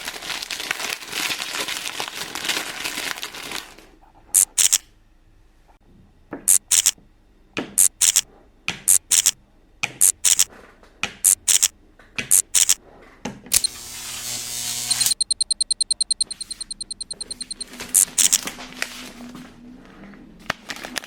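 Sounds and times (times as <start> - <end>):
packaging scratching: 4.4 - 4.8, 14.8 - 19.3.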